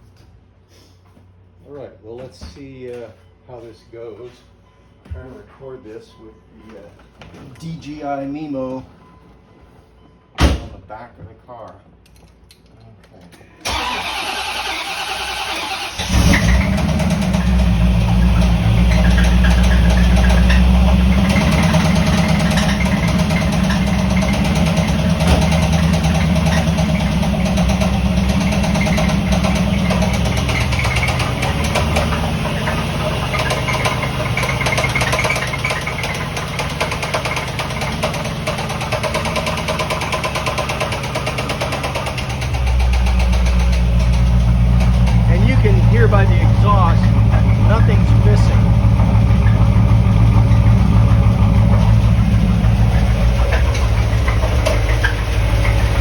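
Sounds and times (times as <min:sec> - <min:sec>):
car engine idling: 0:13.7 - 0:56.0.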